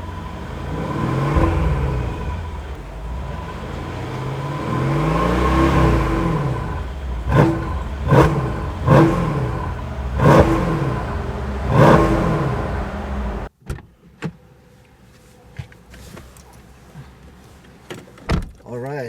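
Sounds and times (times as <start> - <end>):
car exhaust revving: 0.0 - 13.5.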